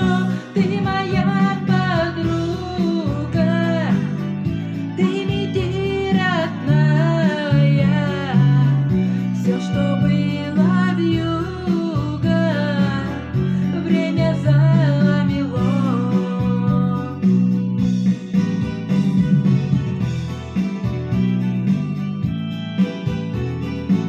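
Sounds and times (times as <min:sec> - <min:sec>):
person singing: 0:00.0 - 0:17.9
acoustic guitar: 0:00.0 - 0:24.0.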